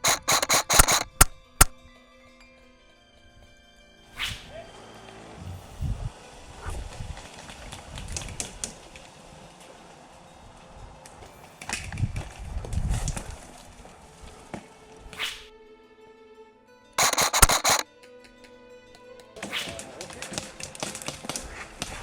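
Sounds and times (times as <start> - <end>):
sharp clicks: 0.0 - 1.8, 17.0 - 17.8.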